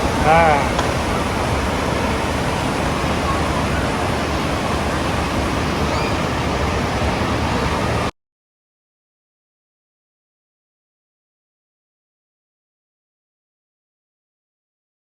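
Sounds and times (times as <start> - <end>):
waterfall rushing and crashing: 0.0 - 8.1.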